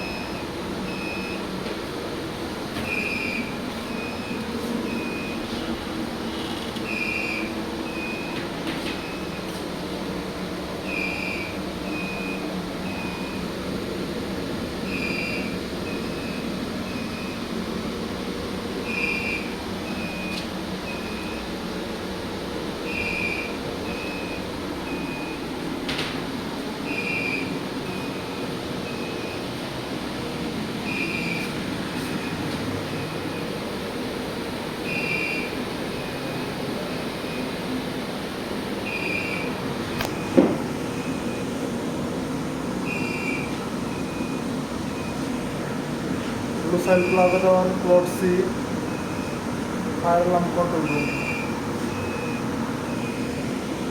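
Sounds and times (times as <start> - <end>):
fire alarm beeps: 0.0 - 1.5, 2.8 - 5.5, 6.8 - 9.6, 10.8 - 13.6, 14.8 - 17.5, 18.8 - 21.6, 22.8 - 25.5, 26.8 - 29.6, 30.2 - 33.7, 34.8 - 36.6, 38.8 - 41.6, 42.8 - 45.4, 46.6 - 53.7
machinery hum: 0.0 - 53.9.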